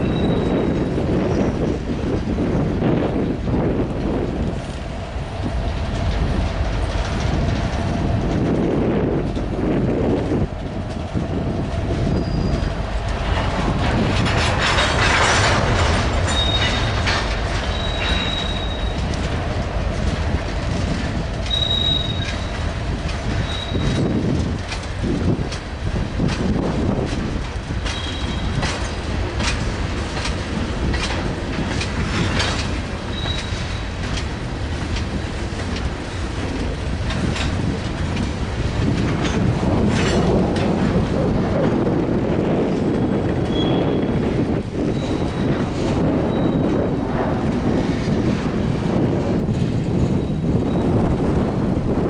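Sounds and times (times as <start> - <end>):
high wheel squeals: 0.0 - 1.6, 12.1 - 12.7, 16.3 - 19.1, 21.5 - 22.5, 23.3 - 24.1, 27.9 - 28.6, 33.1 - 34.0, 43.4 - 44.1, 44.9 - 45.6, 46.2 - 46.8
freight train rumble: 0.0 - 52.0
wheels clacking over rail joints: 0.0 - 52.0.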